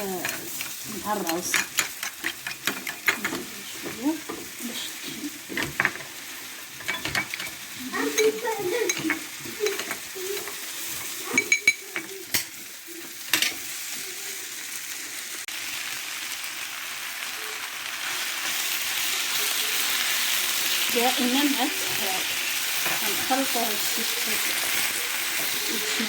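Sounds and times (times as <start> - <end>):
utensil scraping against a pan: 0.0 - 13.8
food sizzling in a pan: 0.0 - 26.0.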